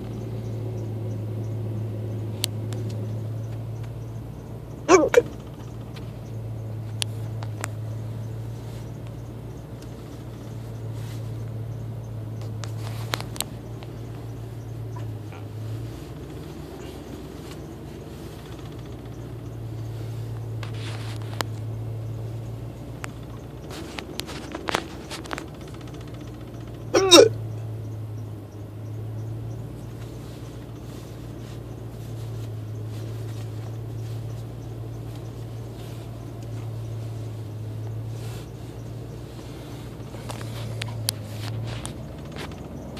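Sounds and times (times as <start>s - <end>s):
man hiccuping: 4.8s - 5.4s, 26.9s - 27.5s.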